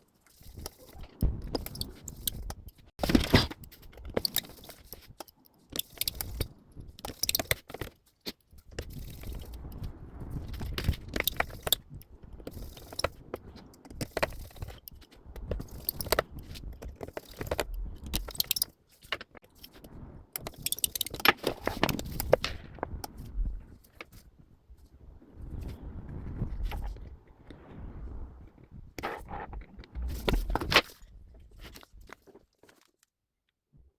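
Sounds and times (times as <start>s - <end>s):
small tools clicking and scraping: 0.0s - 24.3s.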